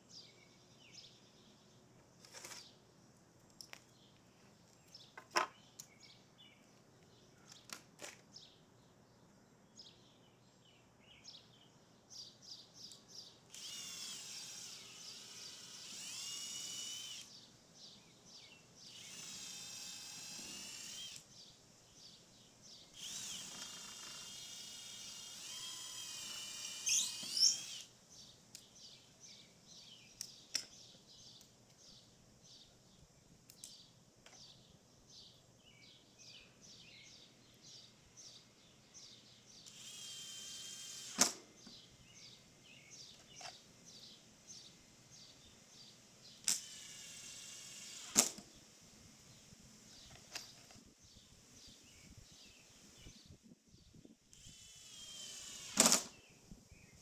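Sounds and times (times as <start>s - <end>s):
small birds chirping: 0.0s - 57.0s
cordless drill whining: 13.5s - 17.4s, 18.9s - 21.3s, 22.9s - 28.0s, 39.6s - 41.4s, 46.4s - 48.4s, 54.3s - 56.2s.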